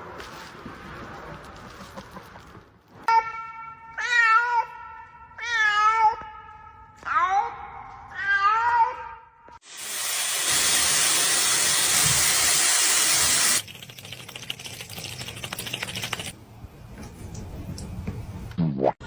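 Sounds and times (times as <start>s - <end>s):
loud steady hiss: 9.6s - 13.6s.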